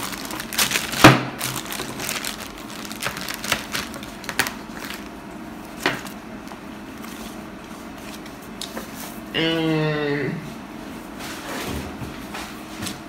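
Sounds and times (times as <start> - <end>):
packaging clicks and knocks: 0.0 - 5.0
packaging crackling rustle: 0.0 - 9.0.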